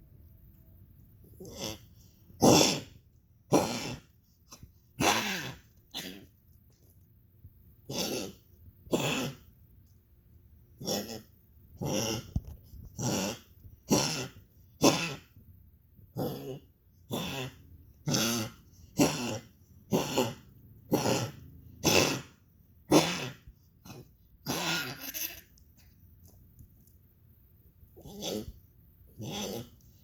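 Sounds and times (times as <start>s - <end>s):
dog coughing: 2.4s - 6.4s, 7.9s - 9.5s, 13.0s - 15.4s, 16.2s - 25.2s.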